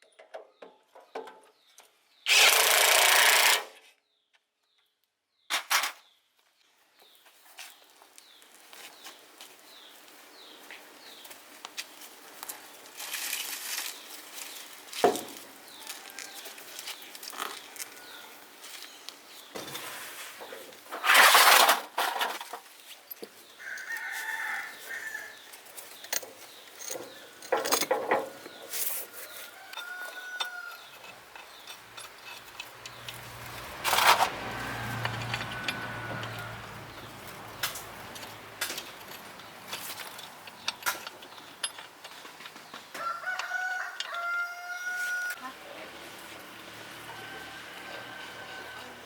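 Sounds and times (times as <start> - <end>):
rooster crowing: 23.6 - 25.4, 29.3 - 31.0, 34.5 - 36.9, 43.0 - 45.4, 46.8 - 49.0.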